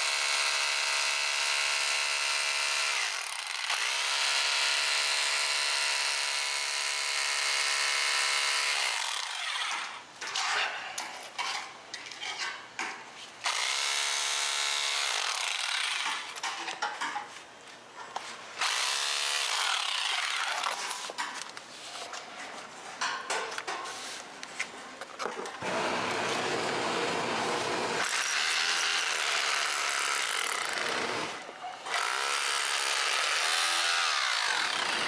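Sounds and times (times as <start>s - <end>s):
small electric power tool running: 25.6s - 35.0s.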